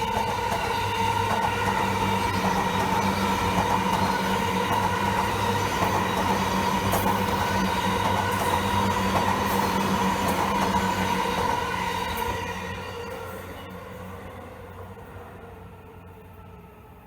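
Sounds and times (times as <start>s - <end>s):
wheels clicking over rails: 0.0s - 12.4s
electric train passing: 0.0s - 17.0s.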